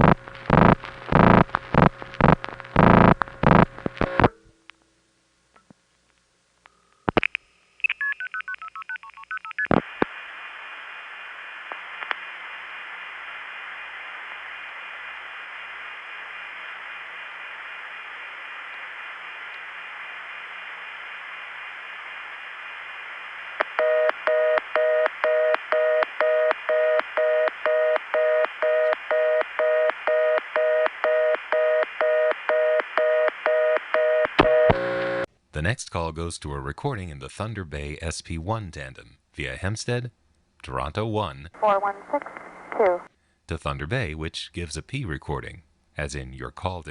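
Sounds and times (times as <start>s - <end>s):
fast busy signal: 0.0s - 4.3s, 23.7s - 35.3s
telephone line hiss: 0.0s - 4.3s, 23.5s - 35.3s.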